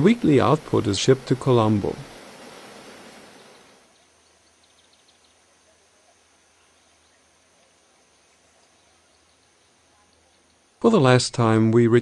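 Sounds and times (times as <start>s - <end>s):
faint high chirps: 2.6s - 10.8s.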